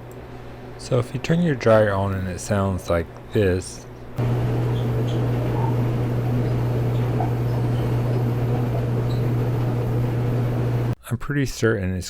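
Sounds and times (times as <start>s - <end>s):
clothes dryer droning: 4.2s - 11.0s.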